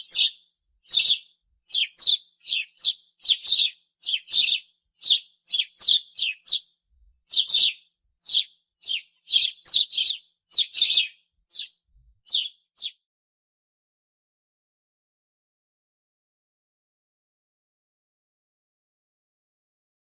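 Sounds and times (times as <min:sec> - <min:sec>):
sparrow chirping: 0:00.0 - 0:13.0.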